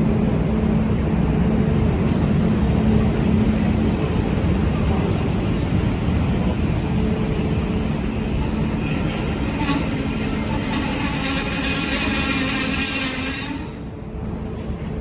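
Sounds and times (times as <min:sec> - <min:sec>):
thin high whine: 0:06.9 - 0:14.4.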